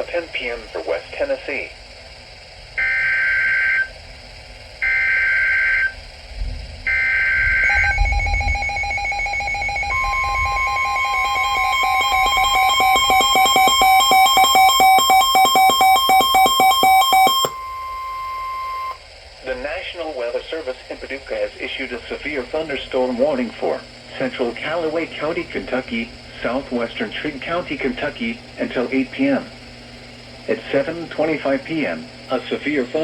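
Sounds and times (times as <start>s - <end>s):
low rumble: 7.7s - 11.1s
fast-pulsing alert tone: 7.7s - 19.0s
steady higher tone: 7.7s - 19.0s
warbling data bursts: 7.7s - 19.0s.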